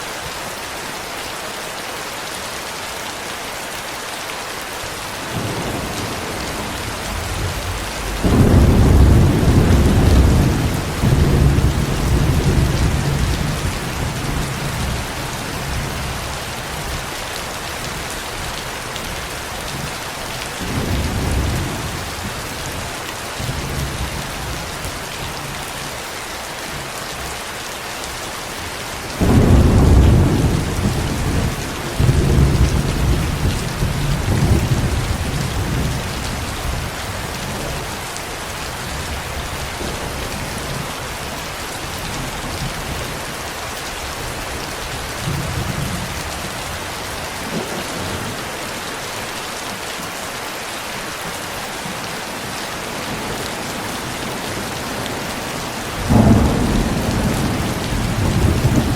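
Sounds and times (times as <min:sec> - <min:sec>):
steady rain falling: 0:00.0 - 0:58.9
thunder rumbling: 0:05.2 - 0:17.0, 0:29.2 - 0:37.8, 0:53.0 - 0:58.9.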